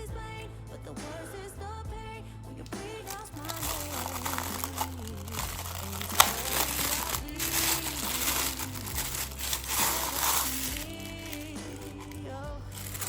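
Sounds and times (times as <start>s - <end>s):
pop music with singing: 0.0s - 13.0s
packaging crinkling and rustling: 3.0s - 13.0s.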